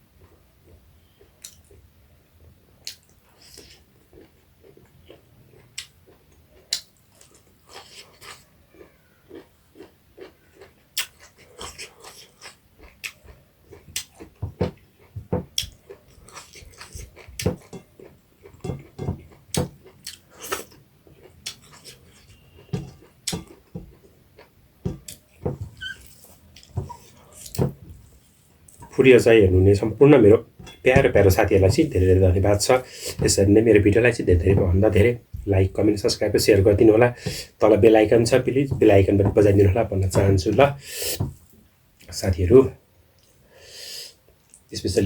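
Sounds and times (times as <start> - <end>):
person chewing with wet smacks: 0.2 - 1.9, 2.8 - 29.0, 44.2 - 44.7.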